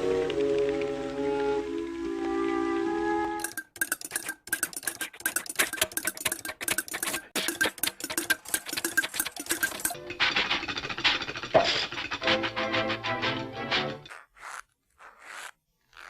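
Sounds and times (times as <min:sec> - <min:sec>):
cartoon mechanical clatter: 0:03.4 - 0:13.4.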